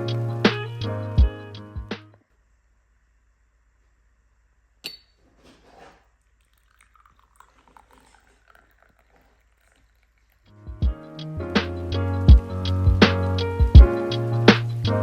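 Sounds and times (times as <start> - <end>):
glass clinking: 4.8 - 5.2, 6.5 - 10.5
small scrapes: 5.2 - 10.4.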